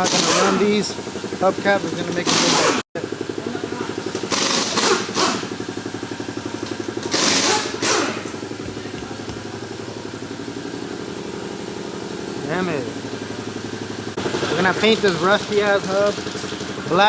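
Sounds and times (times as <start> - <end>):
loud hissing bursts: 0.0 - 2.8
motor running with rapid pulse: 0.0 - 17.0.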